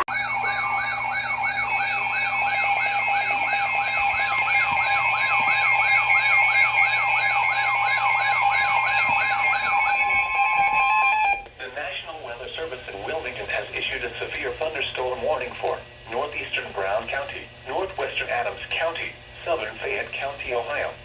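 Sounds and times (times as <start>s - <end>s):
steady electronic tones: 0.0s - 11.5s
warbling alert siren: 0.0s - 11.5s.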